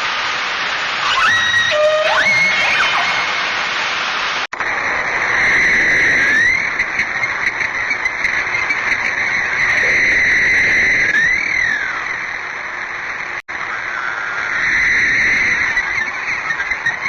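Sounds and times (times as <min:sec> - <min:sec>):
high-pitched underwater drone: 0:00.8 - 0:16.8
whale call sliding up and down: 0:01.0 - 0:03.8.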